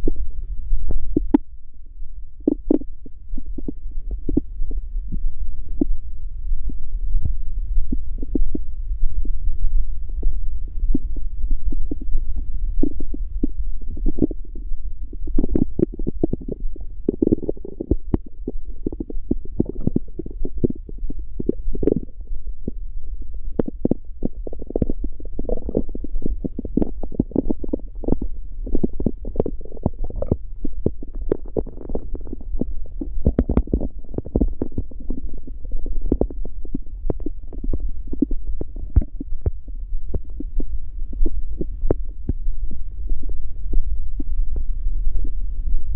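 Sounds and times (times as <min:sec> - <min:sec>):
steady low hum: 0:00.0 - 0:45.9
stomach growling: 0:00.8 - 0:01.5, 0:02.4 - 0:06.0, 0:06.6 - 0:45.9.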